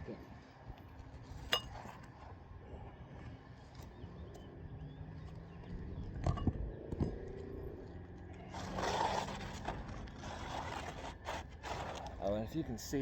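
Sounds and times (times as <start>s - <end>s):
shingle scraping: 8.5s - 12.4s.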